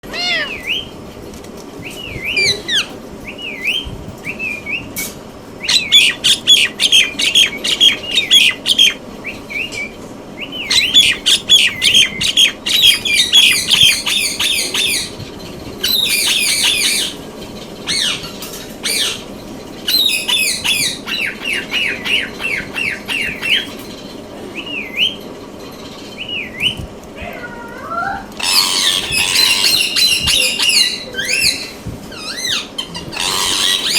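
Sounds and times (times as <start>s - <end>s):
parakeet chirping and chattering: 0.0s - 0.9s, 1.9s - 25.3s, 28.4s - 33.9s
parakeet squawks: 0.1s - 0.9s, 28.4s - 33.9s.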